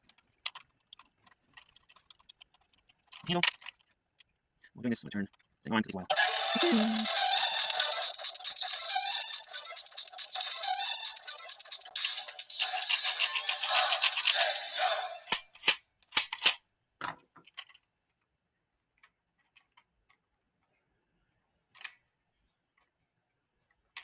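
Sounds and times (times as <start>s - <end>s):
toy electronic sound effects: 6.0s - 15.4s.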